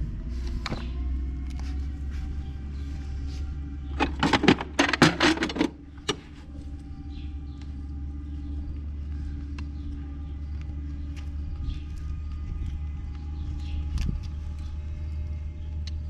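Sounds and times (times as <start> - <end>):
steady low rumble: 0.0 - 16.0
clattering knocks: 4.0 - 6.2.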